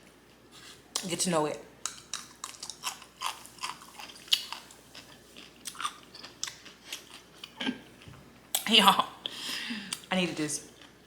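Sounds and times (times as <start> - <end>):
person chewing crunchy food: 1.8 - 8.1.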